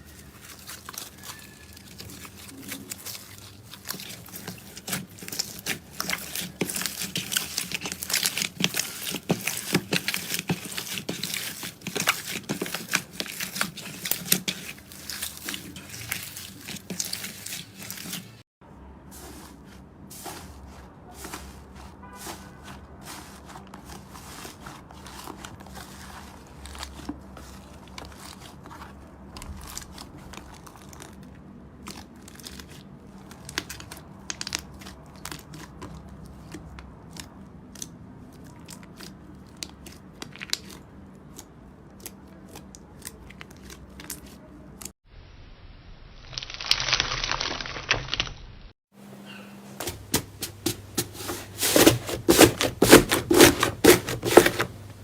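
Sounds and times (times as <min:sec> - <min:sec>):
slime clicking and crackling: 0:00.0 - 0:18.4.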